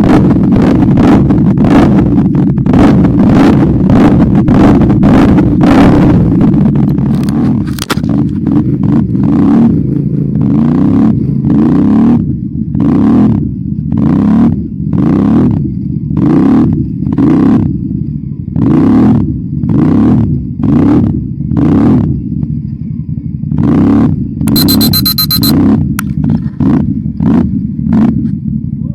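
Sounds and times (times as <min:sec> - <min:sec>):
atv engine revving: 0:00.0 - 0:12.2.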